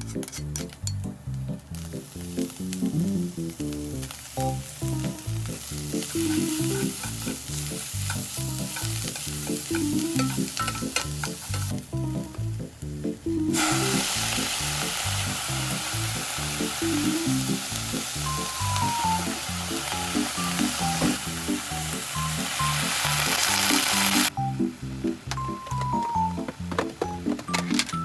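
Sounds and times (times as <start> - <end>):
background music: 0.0 - 28.0
food sizzling in a frying pan: 1.4 - 26.6
utensil clicking against pan: 6.0 - 11.9.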